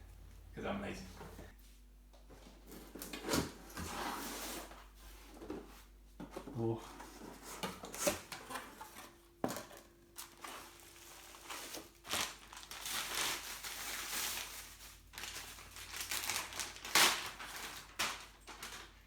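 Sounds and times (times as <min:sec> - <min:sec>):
packaging crinkling and tearing: 0:10.2 - 0:19.0.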